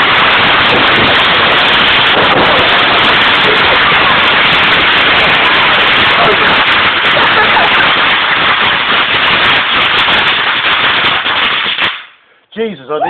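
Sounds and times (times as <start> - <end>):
firework fountain hissing crackle: 0.0 - 12.3.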